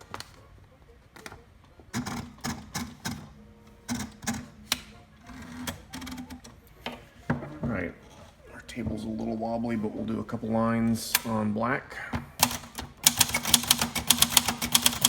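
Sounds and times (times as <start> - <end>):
typewriter clicking and clacking: 1.9 - 3.3, 12.4 - 15.0.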